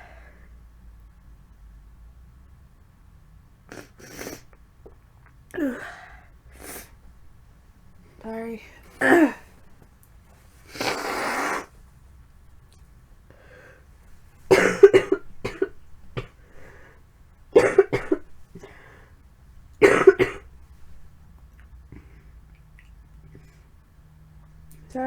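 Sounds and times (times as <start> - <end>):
woman coughing harshly: 9.0 - 9.5, 14.5 - 16.4, 17.6 - 18.3, 19.8 - 20.5.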